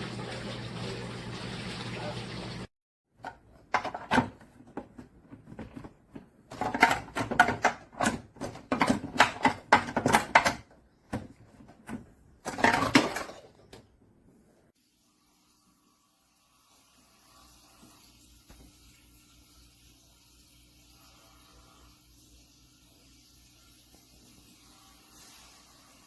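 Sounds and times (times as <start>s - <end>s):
hard objects clicking and knocking: 3.2s - 13.8s.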